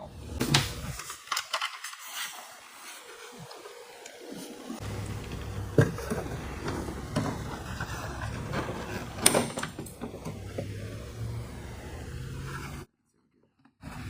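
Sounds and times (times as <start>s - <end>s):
panel scraping and rattling: 5.2s - 11.2s.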